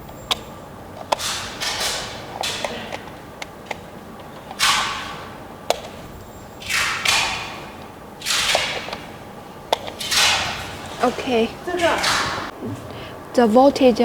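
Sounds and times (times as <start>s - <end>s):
oxygen concentrator valve clicks: 0.1s - 12.5s.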